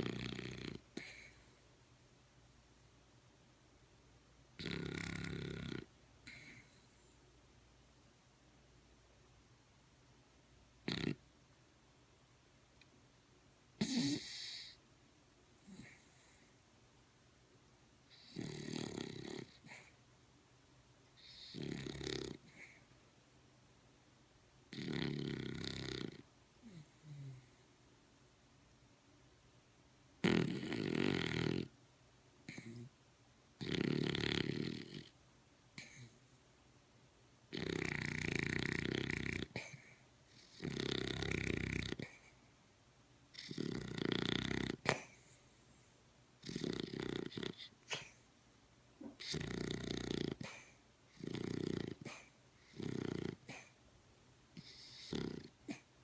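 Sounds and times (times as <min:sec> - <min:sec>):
loud rattling snores: 0:00.0 - 0:01.1, 0:04.6 - 0:06.5, 0:10.8 - 0:11.2, 0:13.8 - 0:14.7, 0:18.1 - 0:19.8, 0:21.2 - 0:22.4, 0:24.7 - 0:26.2, 0:30.2 - 0:31.7, 0:33.6 - 0:35.1, 0:37.5 - 0:39.7, 0:40.4 - 0:42.1, 0:43.4 - 0:45.0, 0:46.4 - 0:47.7, 0:49.2 - 0:50.6, 0:51.2 - 0:53.7, 0:54.6 - 0:55.8
soft breath: 0:00.9 - 0:01.8, 0:06.2 - 0:07.3.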